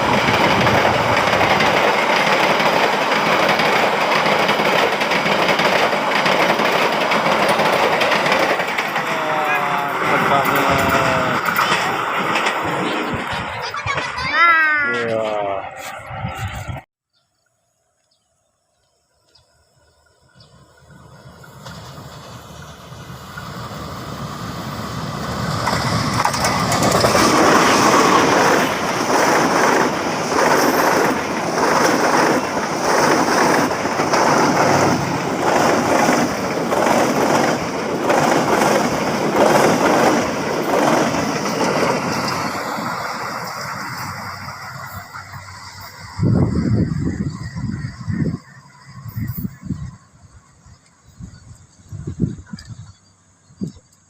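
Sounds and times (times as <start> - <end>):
wheels clattering over rail joints: 0.0 - 14.2, 24.8 - 46.3
train passing: 0.0 - 16.9, 19.5 - 54.0.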